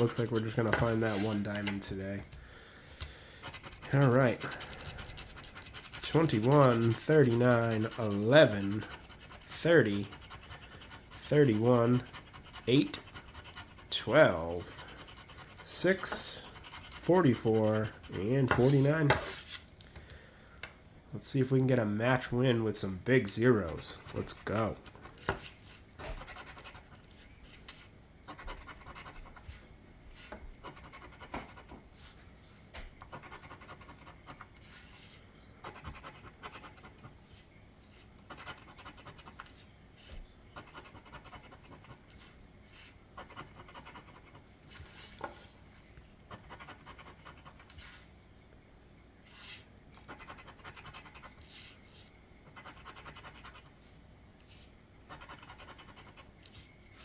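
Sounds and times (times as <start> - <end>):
scratch card being scratched: 0.0 - 1.8, 3.4 - 19.6, 40.6 - 42.0, 50.0 - 51.4, 55.1 - 56.2.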